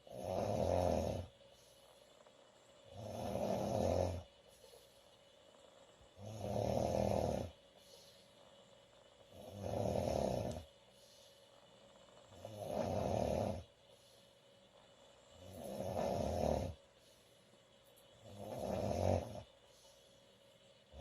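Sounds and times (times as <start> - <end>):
woman snoring loudly: 0.0 - 1.3, 2.9 - 4.3, 6.2 - 7.6, 9.3 - 10.6, 12.4 - 13.7, 15.4 - 16.8, 18.2 - 19.5.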